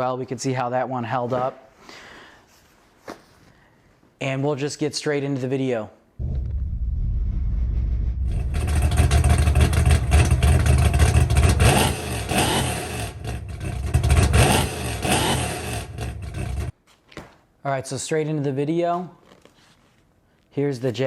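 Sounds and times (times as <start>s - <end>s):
car engine revving: 6.2s - 16.7s.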